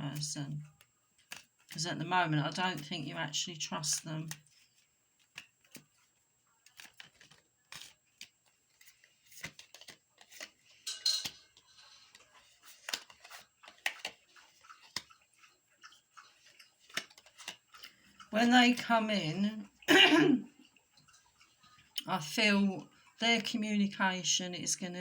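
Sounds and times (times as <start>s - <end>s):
cards being shuffled: 1.2s - 1.9s, 3.9s - 10.8s, 12.0s - 15.1s, 16.4s - 17.6s.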